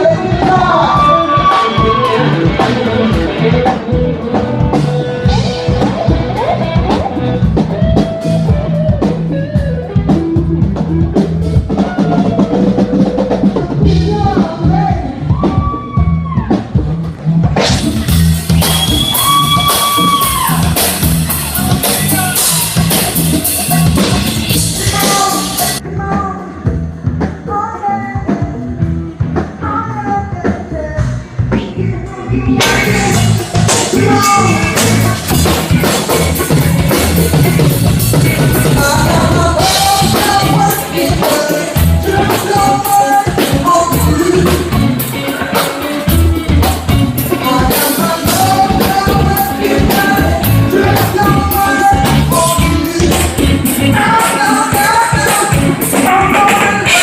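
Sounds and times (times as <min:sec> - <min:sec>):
woman singing: 0:00.0 - 0:10.2, 0:11.9 - 0:15.8, 0:23.6 - 0:28.9, 0:29.6 - 0:35.6, 0:38.6 - 0:45.7, 0:47.3 - 0:57.0
bass guitar: 0:00.0 - 0:57.0
drum kit: 0:00.0 - 0:57.0.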